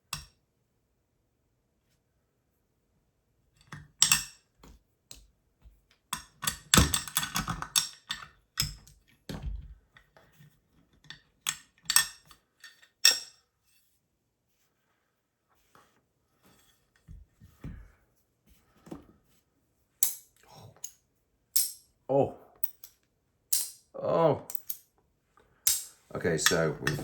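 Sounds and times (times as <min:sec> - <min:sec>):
metal parts and tools clinking: 0:06.2 - 0:08.8, 0:11.0 - 0:13.4, 0:22.6 - 0:23.8, 0:24.5 - 0:24.9, 0:25.7 - 0:27.0.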